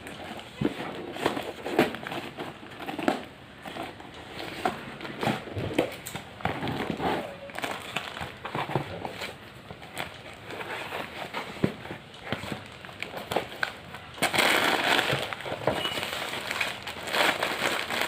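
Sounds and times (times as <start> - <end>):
packaging crinkling: 0.0 - 18.0.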